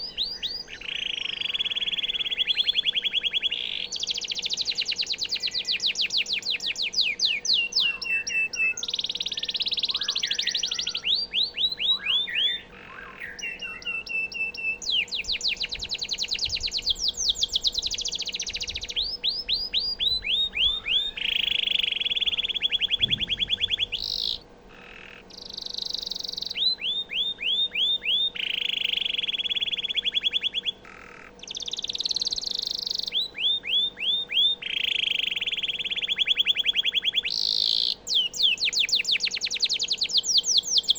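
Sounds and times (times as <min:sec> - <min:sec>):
canary singing rapid trills: 0:00.0 - 0:40.9.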